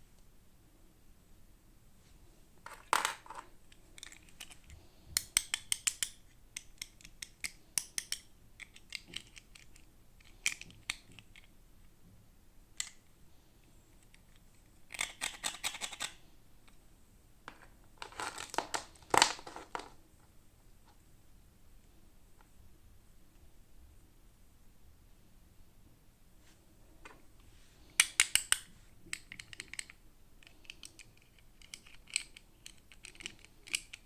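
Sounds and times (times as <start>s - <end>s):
plastic and card packaging crinkling: 18.0s - 19.9s.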